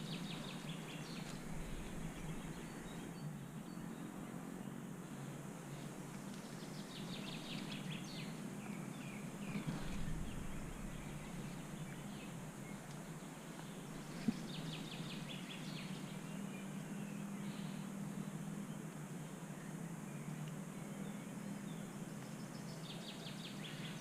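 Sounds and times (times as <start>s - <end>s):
steady low hum: 0.0s - 24.0s
faint click: 12.8s - 14.5s.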